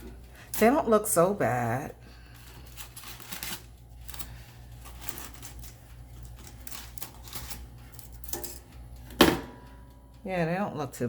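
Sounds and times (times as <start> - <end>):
baking tray clicking and clattering: 4.8 - 9.7.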